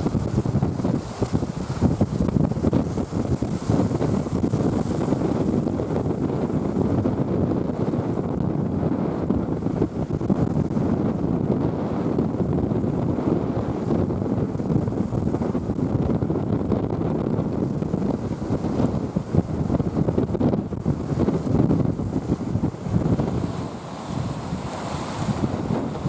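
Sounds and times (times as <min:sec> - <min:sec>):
sea waves: 0:00.0 - 0:07.0, 0:17.6 - 0:26.0
wind buffeting microphone: 0:00.0 - 0:26.0.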